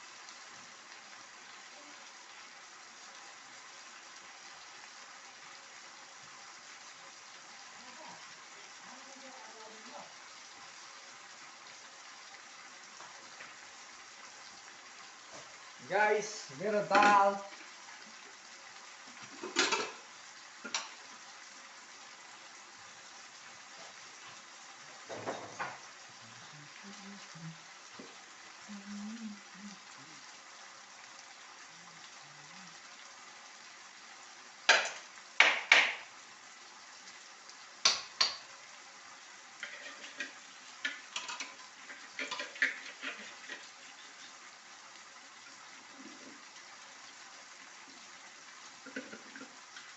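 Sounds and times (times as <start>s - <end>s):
pot hissing on stove: 0.0s - 49.9s
spoon knocking on pot: 34.7s - 36.0s
scrape or clatter: 39.6s - 40.4s
spoon stirring pot: 39.6s - 44.4s.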